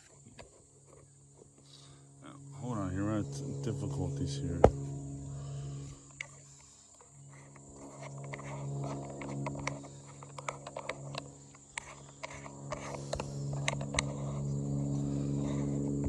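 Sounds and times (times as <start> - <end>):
high insect drone: 0.0 - 16.0
wasps buzzing in a swarm: 0.0 - 16.0
brush crackling underfoot: 4.5 - 16.0.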